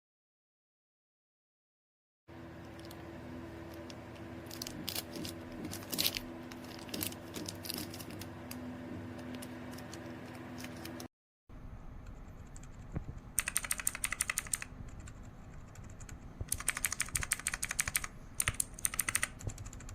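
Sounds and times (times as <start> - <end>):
steady low hum: 2.3 - 19.9
plastic keyboard switches clicking: 13.4 - 19.9.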